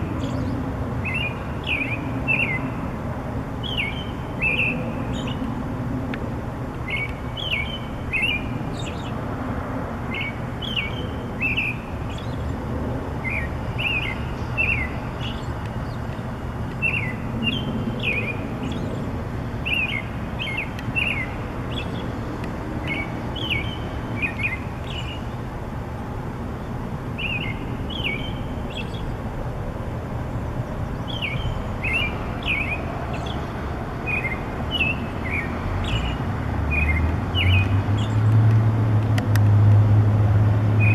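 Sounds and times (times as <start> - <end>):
songbird chirping: 3.6 - 5.5, 6.8 - 9.2, 13.2 - 25.3, 26.6 - 29.2, 30.7 - 38.3.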